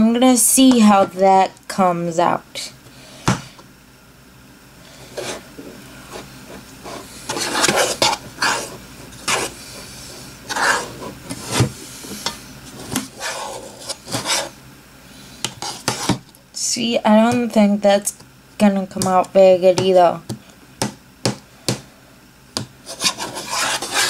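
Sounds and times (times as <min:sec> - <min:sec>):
utensil scraping a bowl: 0:05.0 - 0:14.6, 0:22.8 - 0:24.0.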